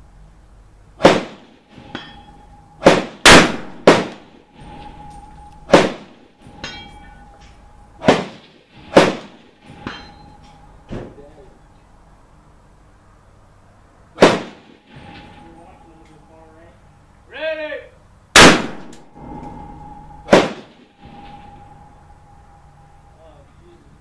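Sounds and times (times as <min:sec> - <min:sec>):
fainter gunshots: 0:01.0 - 0:01.6, 0:02.8 - 0:04.3, 0:05.7 - 0:06.2, 0:08.0 - 0:09.4, 0:14.2 - 0:15.0, 0:18.4 - 0:19.0, 0:20.3 - 0:20.8
loud rifle shots: 0:01.0 - 0:01.6, 0:02.8 - 0:04.3, 0:05.7 - 0:06.2, 0:08.0 - 0:09.5, 0:14.2 - 0:14.8, 0:18.4 - 0:19.0, 0:20.3 - 0:20.7.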